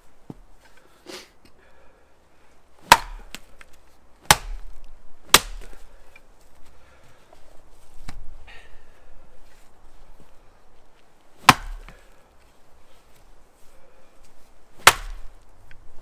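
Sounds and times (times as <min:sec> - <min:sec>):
axe chopping wood: 0:02.8 - 0:05.9, 0:11.4 - 0:12.0, 0:14.8 - 0:15.4.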